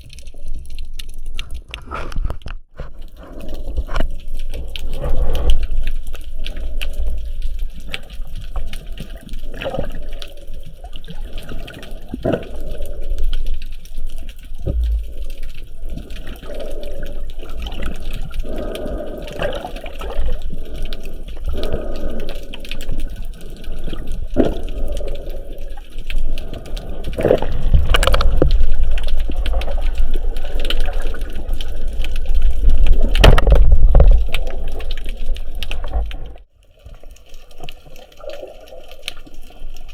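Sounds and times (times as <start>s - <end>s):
sea water sloshing and gurgling: 0.0s - 39.9s
constant low rumble: 13.6s - 19.2s.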